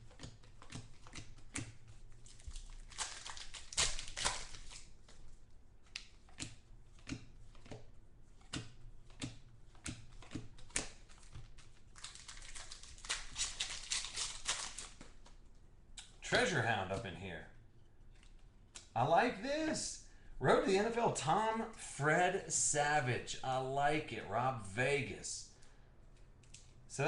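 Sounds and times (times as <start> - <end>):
cards clicking and tapping: 0.0 - 15.4
cards rustling: 0.0 - 15.5.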